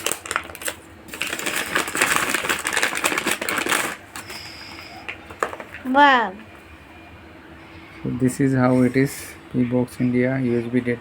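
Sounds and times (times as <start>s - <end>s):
packaging crinkling and rustling: 0.0s - 5.8s.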